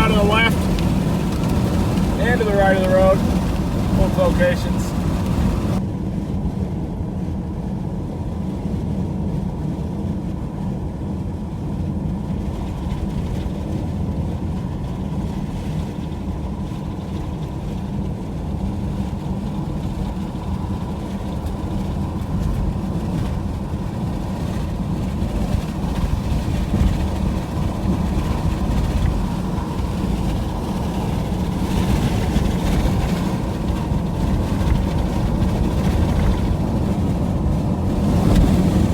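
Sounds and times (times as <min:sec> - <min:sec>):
vehicle driving on road: 0:00.0 - 0:38.9.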